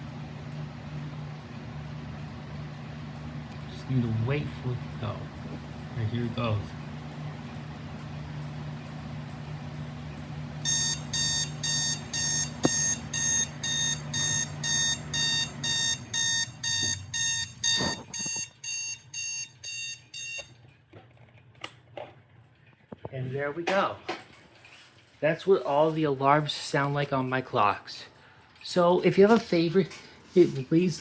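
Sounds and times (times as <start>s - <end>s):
low steady hum: 10.5s - 20.7s
alarm clock beeping: 10.6s - 20.5s.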